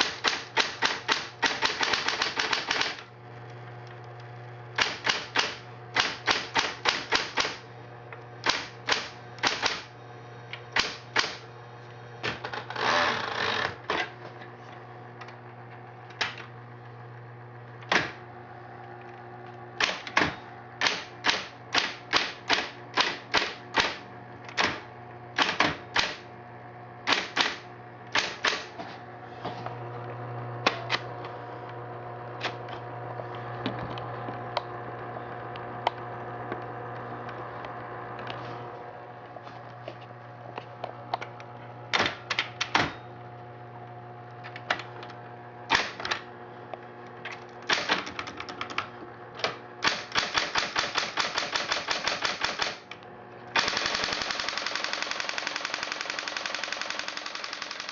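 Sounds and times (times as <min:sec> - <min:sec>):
typewriter keystrike clacks: 0:00.0 - 0:03.0, 0:04.8 - 0:07.6, 0:49.8 - 0:52.8, 0:53.6 - 0:57.9
typewriter motor hum: 0:00.0 - 0:17.0, 0:17.6 - 0:39.0, 0:44.3 - 0:57.9.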